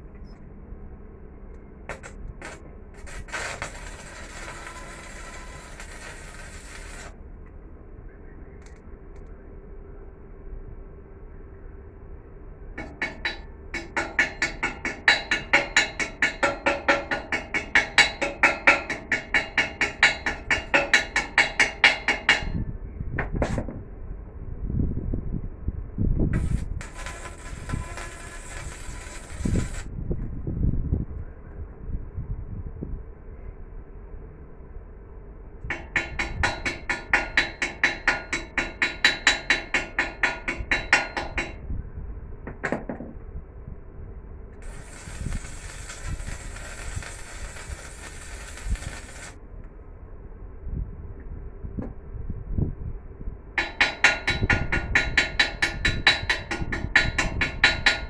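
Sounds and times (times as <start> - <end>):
rapid hammering on metal: 12.8 - 22.6, 35.7 - 41.6, 53.6 - 58.0.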